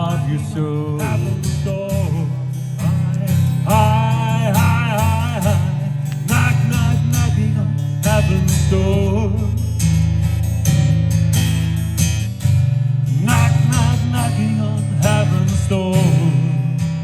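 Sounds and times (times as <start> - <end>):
person singing slow melody: 0.0 - 9.8, 13.1 - 16.9
strummed acoustic guitar: 0.0 - 17.0.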